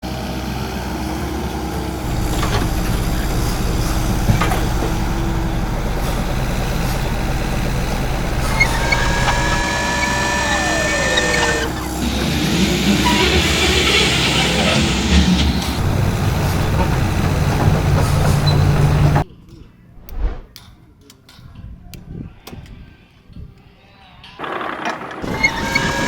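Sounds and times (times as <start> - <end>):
drilling rig engine rumble: 0.1 - 19.2, 24.4 - 26.0
high whine sliding down: 6.9 - 12.0.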